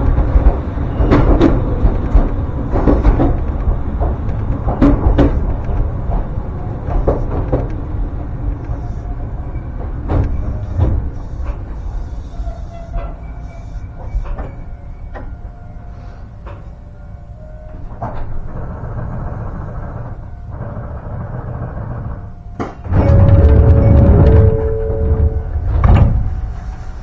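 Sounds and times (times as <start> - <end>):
train rumbling with wheel clacks: 0.0 - 27.0
faint steady ringing tone: 22.9 - 27.0.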